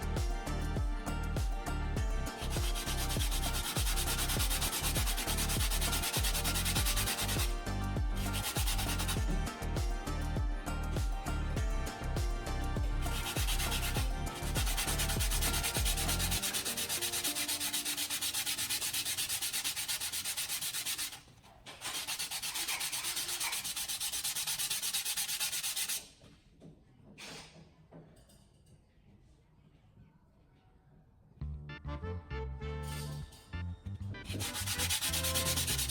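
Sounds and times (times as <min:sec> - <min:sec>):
background music beat: 0:00.0 - 0:19.9, 0:31.4 - 0:35.9
abrasive sanding strokes: 0:02.3 - 0:09.8, 0:12.4 - 0:26.1, 0:34.3 - 0:35.9.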